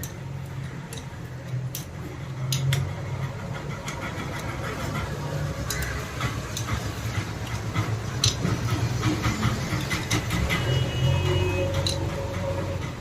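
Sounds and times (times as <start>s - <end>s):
hand tool metallic clicks: 0.0s - 2.9s, 7.4s - 8.6s
engine rumble: 0.0s - 13.0s.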